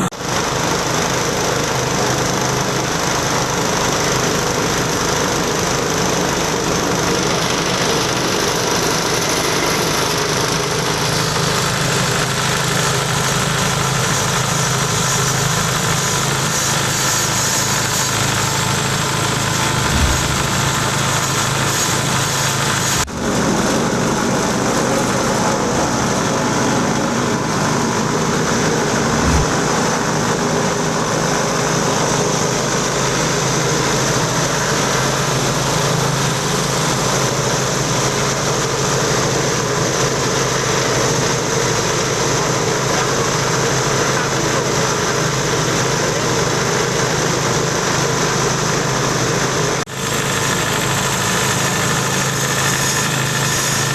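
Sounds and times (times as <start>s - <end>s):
grinding mill running: 0.0s - 53.9s
low hum: 19.4s - 21.8s, 28.4s - 30.1s.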